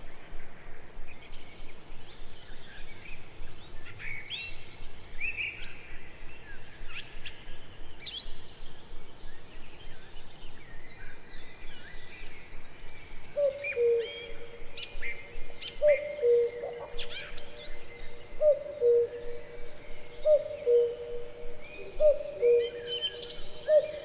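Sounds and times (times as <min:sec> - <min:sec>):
birds chirping and whistling: 0:10.6 - 0:24.0
low steady hooting: 0:13.4 - 0:24.0.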